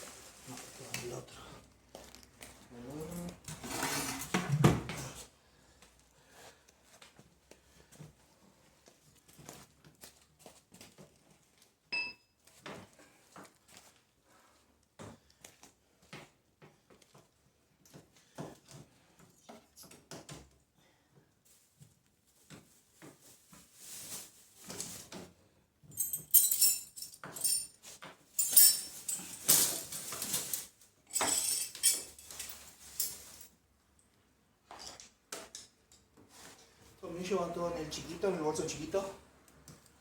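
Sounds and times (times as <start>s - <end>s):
metal parts clinking and jangling: 25.9s - 27.8s, 28.4s - 33.5s
metal tools being handled: 25.9s - 33.5s.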